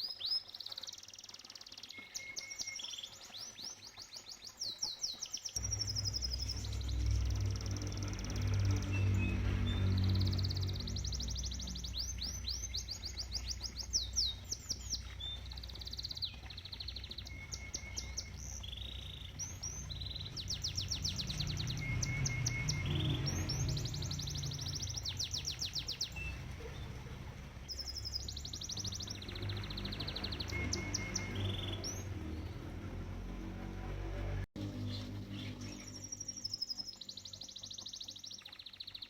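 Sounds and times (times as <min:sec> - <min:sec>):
water rushing: 0:00.0 - 0:35.4
canary singing: 0:05.5 - 0:26.9, 0:27.7 - 0:33.0.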